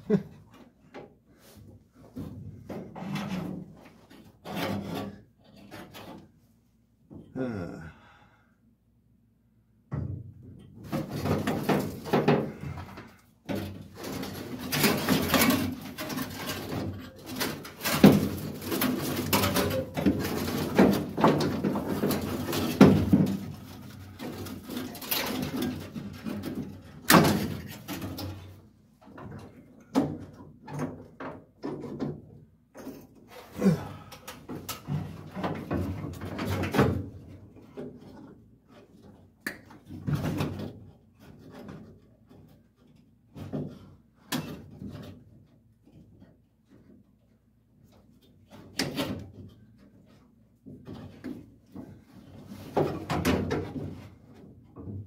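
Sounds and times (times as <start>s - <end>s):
tools scraping and rattling: 2.2s - 6.4s, 10.8s - 46.9s.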